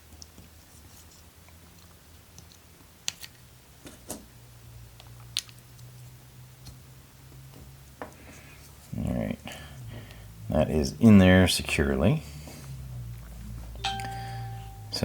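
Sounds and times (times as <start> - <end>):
faint steady low hum: 8.2 - 15.0.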